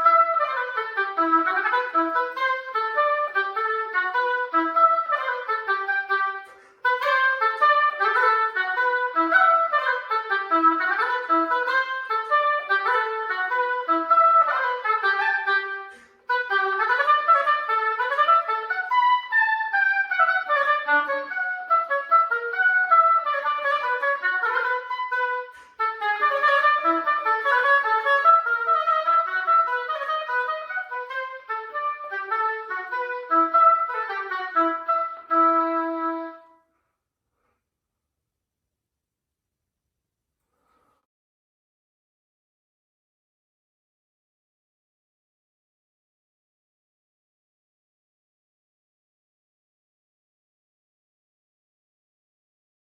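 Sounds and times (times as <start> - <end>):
solo oboe playing: 0.0 - 36.7.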